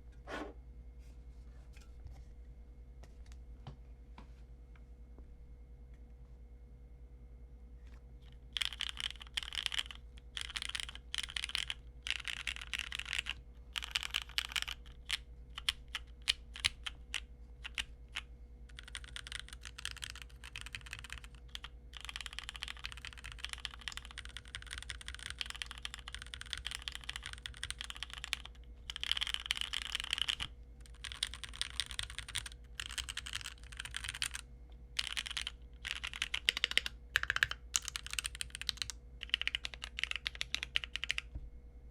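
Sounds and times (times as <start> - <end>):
mechanical keyboard typing: 8.5 - 34.4, 35.0 - 41.3.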